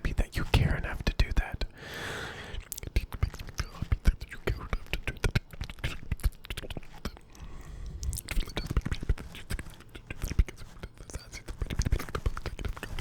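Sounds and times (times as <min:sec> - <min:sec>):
wet lip and tongue clicks: 0:02.6 - 0:13.0.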